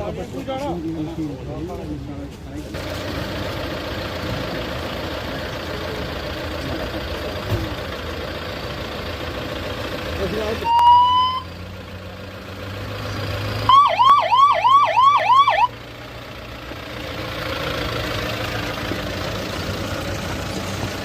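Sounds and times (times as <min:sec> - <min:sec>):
low engine hum: 0:00.0 - 0:21.0
electronic siren yelp: 0:10.6 - 0:11.5, 0:13.7 - 0:15.7.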